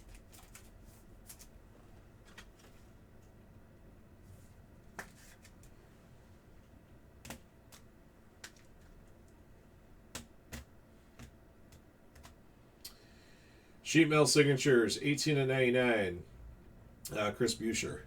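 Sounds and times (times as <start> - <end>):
cards clicking and tapping: 5.0 - 5.5, 10.1 - 12.4.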